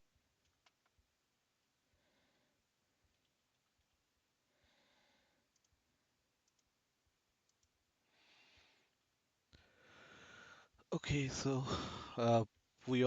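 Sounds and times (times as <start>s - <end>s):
soft breaths: 1.6s - 3.6s, 4.3s - 6.1s, 7.9s - 13.0s
faint computer mouse clicks: 5.5s - 5.8s, 6.4s - 6.7s, 7.4s - 7.8s.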